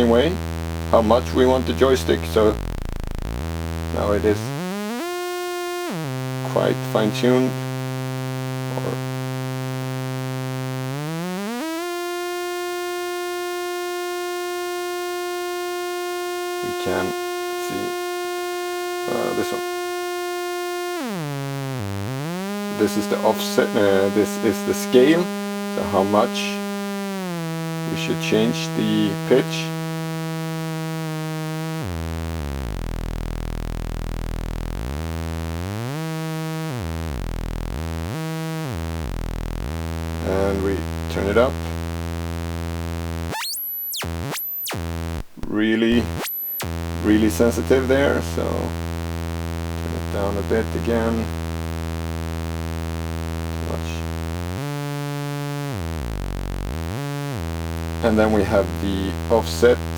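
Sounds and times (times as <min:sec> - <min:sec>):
synth oscillator buzzy tone gliding: 0:02.4 - 0:24.2, 0:25.2 - 0:47.0.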